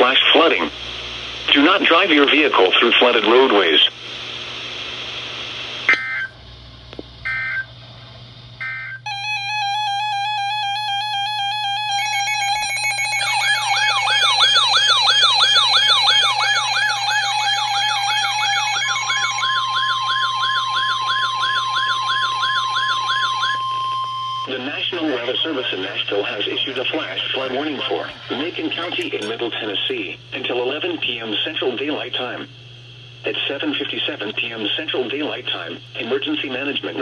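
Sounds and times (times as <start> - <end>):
steady warning alarm tone: 5.9 - 6.4, 7.2 - 7.7, 8.6 - 32.0
digital data beeps: 8.6 - 24.5
siren-like alert tone: 8.6 - 24.5.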